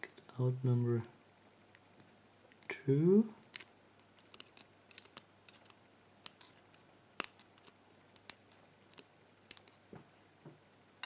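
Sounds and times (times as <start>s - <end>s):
metal tweezers clicking on lock pins: 3.5s - 9.8s.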